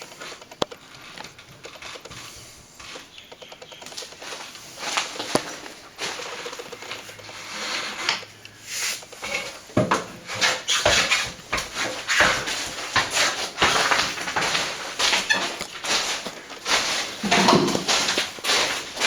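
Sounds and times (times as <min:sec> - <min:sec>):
tool scraping wet cement: 0:04.3 - 0:19.0.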